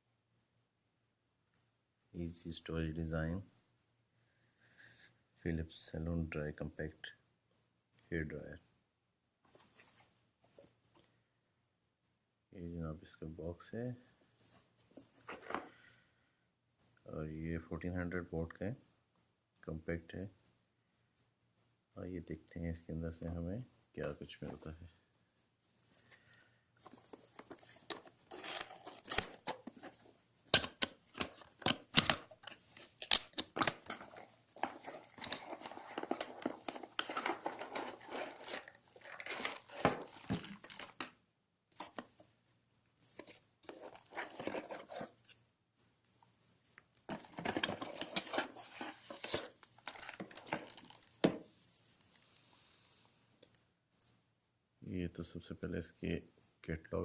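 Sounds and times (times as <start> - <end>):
cardboard packaging tearing and crinkling: 26.9 - 41.1, 43.2 - 45.1, 47.1 - 51.2.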